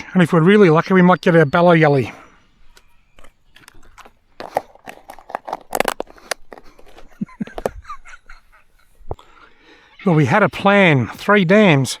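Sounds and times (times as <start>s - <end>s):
rustling and crinkling: 2.7s - 9.2s.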